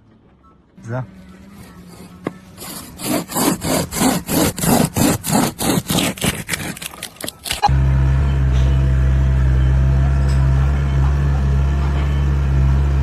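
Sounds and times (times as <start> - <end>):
rhythmic rasping strokes: 1.2 - 7.7.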